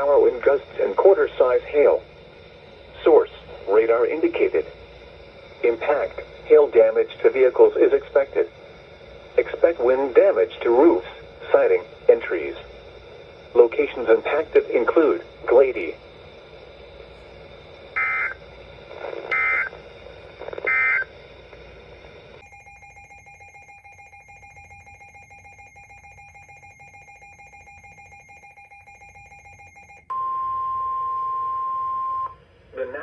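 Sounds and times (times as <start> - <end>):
faint steady hum: 0.0 - 33.0
loud steady alarm tone: 0.0 - 33.0
short digital data bursts: 20.6 - 21.1.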